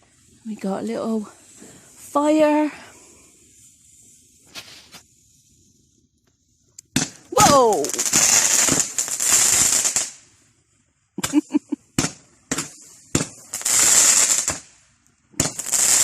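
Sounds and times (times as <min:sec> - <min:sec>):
fireworks hissing and crackling: 0:00.0 - 0:16.0
firework bangs: 0:06.9 - 0:10.2, 0:11.2 - 0:16.0.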